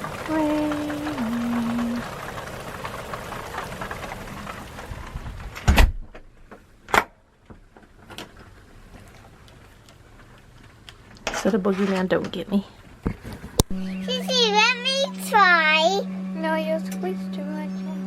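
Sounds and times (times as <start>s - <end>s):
heavy rain pouring: 0.0s - 5.7s
loud thump: 5.6s - 6.2s.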